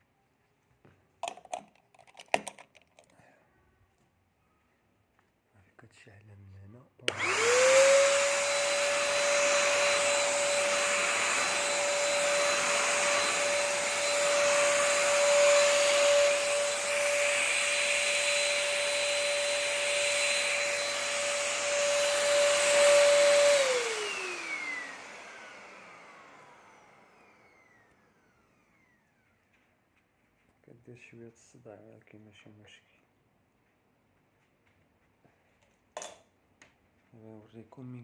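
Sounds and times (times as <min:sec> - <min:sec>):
vacuum cleaner motor whine: 0:07.1 - 0:29.7.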